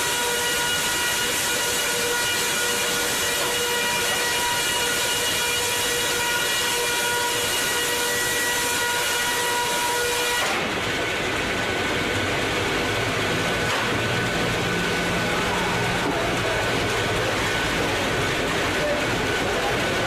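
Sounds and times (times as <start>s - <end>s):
sawmill saw cutting wood: 0.0s - 20.0s
low machine hum: 10.7s - 20.0s.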